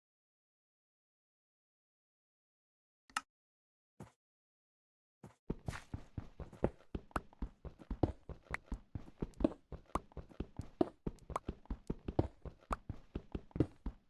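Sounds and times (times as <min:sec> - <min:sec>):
irregular knocks and taps: 0:05.5 - 0:14.0.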